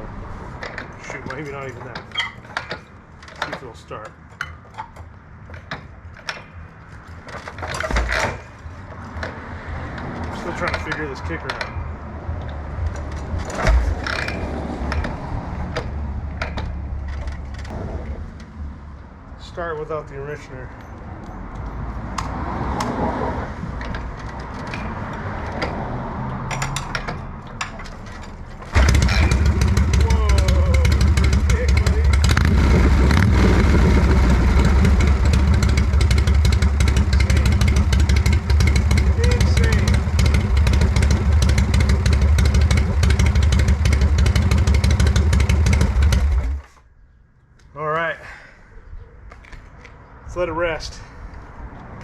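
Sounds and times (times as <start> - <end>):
motorcycle engine running: 28.7 - 46.6.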